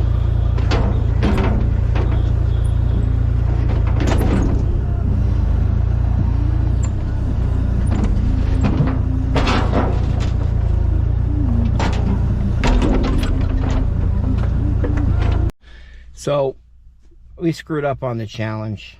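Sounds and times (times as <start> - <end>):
vehicle rumbling: 0.0 - 18.9
music playing: 10.2 - 15.5.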